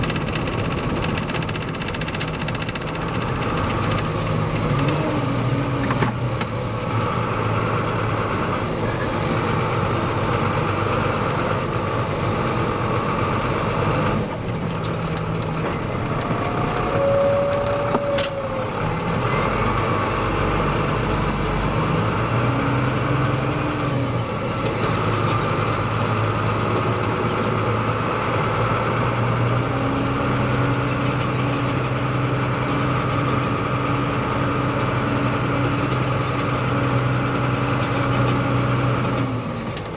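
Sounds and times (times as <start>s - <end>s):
tractor diesel engine running: 0.0s - 39.9s
turbocharger whistle: 16.6s - 18.3s.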